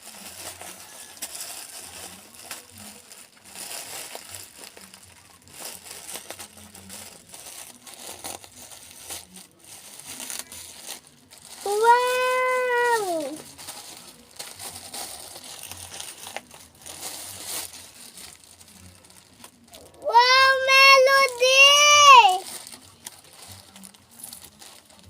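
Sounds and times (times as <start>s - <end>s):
packaging crinkling and rustling: 0.0s - 25.0s
child exclaiming wow: 11.7s - 13.4s, 20.0s - 22.4s.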